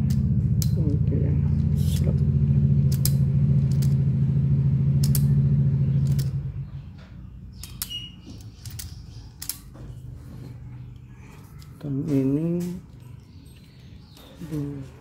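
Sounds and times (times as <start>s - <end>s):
low mechanical hum: 0.0s - 15.0s
wire stripper clicks and creaks: 1.5s - 4.0s, 5.0s - 5.4s, 6.0s - 10.0s.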